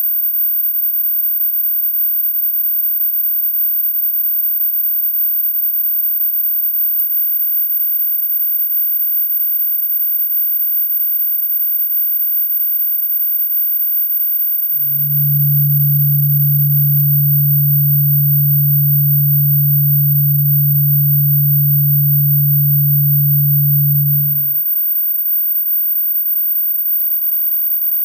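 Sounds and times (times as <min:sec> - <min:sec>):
high-pitched electronic whine: 0:14.8 - 0:24.6
loud low hum tone: 0:14.8 - 0:24.6.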